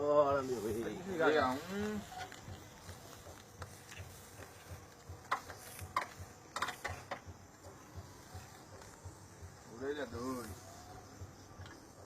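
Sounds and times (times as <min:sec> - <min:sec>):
sharp clicks and knocks: 0:05.2 - 0:07.8.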